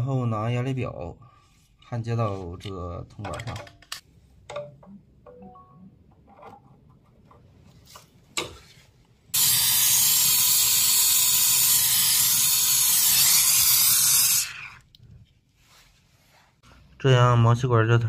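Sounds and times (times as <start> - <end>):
brazing torch hissing: 9.4 - 14.8.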